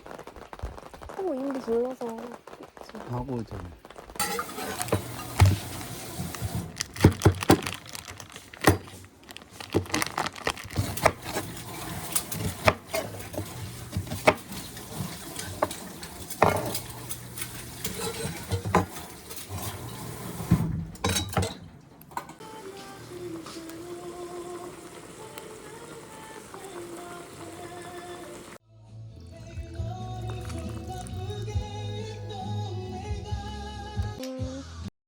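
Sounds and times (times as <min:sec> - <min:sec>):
dishes and cutlery clattering: 0:04.2 - 0:07.7, 0:10.8 - 0:22.4.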